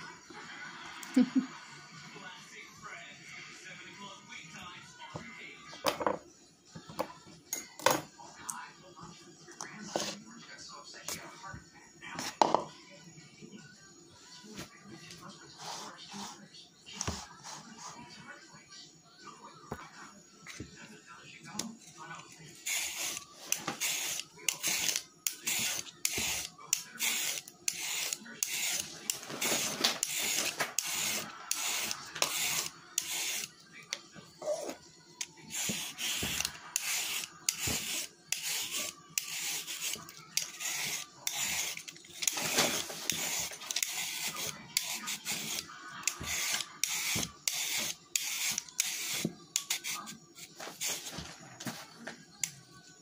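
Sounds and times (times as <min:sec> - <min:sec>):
scratchy strokes on vegetables: 0:15.6 - 0:16.4, 0:22.6 - 0:33.6, 0:35.5 - 0:51.9.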